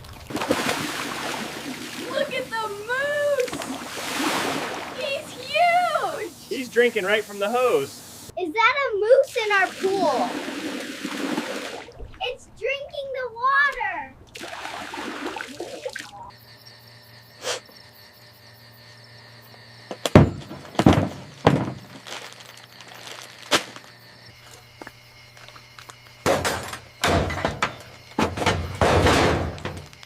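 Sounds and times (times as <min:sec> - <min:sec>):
sharp thumps and knocks: 0:26.2 - 0:30.0.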